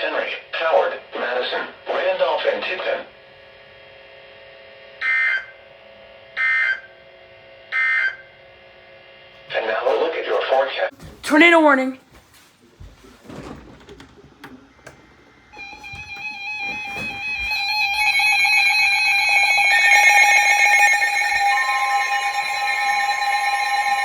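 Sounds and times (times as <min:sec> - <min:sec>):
electronic alarm tones: 0:06.4 - 0:06.9, 0:15.5 - 0:24.0
rapid alarm beeping: 0:06.4 - 0:06.9, 0:07.7 - 0:08.2, 0:15.6 - 0:24.0.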